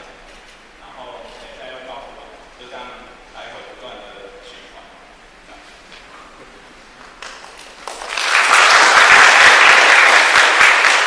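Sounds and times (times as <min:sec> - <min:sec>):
audience applauding: 0:07.0 - 0:11.0.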